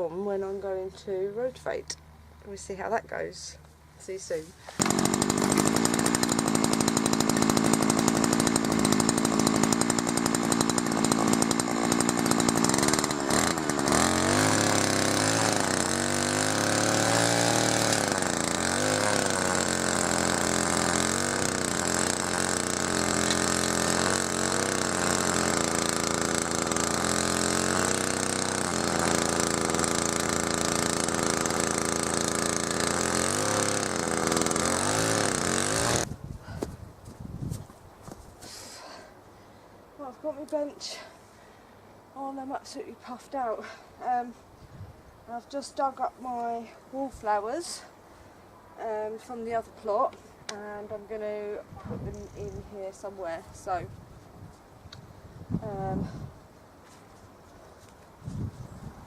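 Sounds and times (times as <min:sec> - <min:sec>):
tiller engine running: 0:04.7 - 0:36.1.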